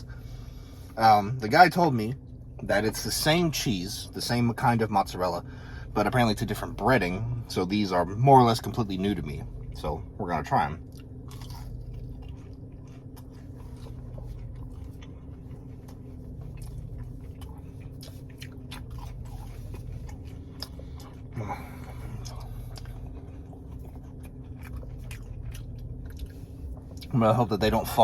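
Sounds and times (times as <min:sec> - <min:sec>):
crunchy chewing: 0:10.8 - 0:28.0.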